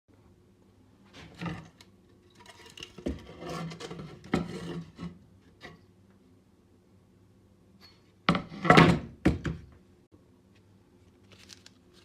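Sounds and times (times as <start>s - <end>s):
objects scraping: 1.1s - 5.8s.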